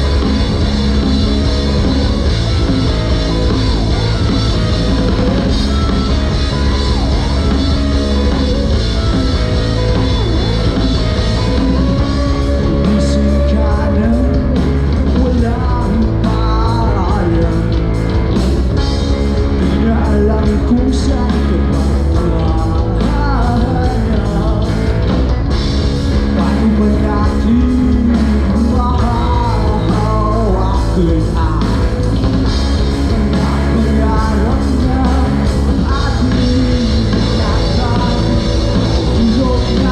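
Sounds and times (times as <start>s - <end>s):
person singing lead vocal: 0.0s - 18.2s, 19.4s - 25.3s, 26.2s - 39.9s
live rock band playing: 0.0s - 39.9s.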